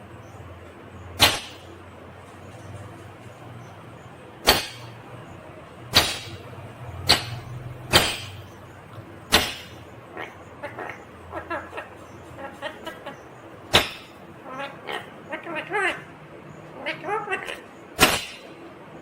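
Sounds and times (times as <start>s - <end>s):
parakeet chattering: 2.4s - 18.6s
parakeet harsh shrieks: 9.3s - 16.1s, 16.8s - 18.5s.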